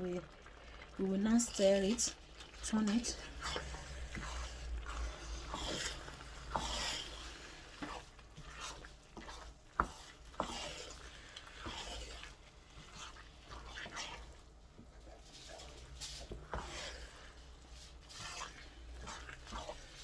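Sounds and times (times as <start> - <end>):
stick scraping in a pot: 1.2 - 20.0.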